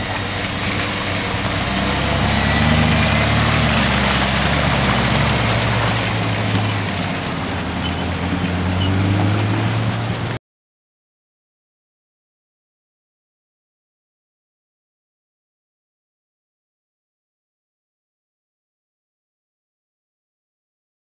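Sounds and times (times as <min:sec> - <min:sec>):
off-road engine under load: 0:00.0 - 0:10.4.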